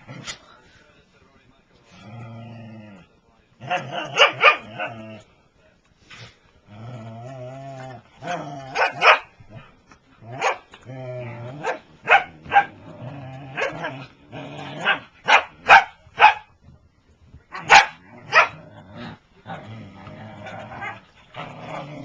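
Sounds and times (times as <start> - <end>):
dogs barking and yipping: 17.6 - 18.6.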